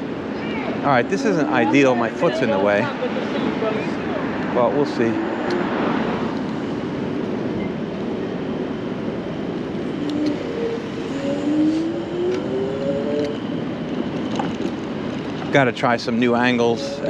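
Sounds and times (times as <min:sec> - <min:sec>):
wind and road noise: 0:00.0 - 0:17.0
electric motor whine: 0:09.4 - 0:14.8.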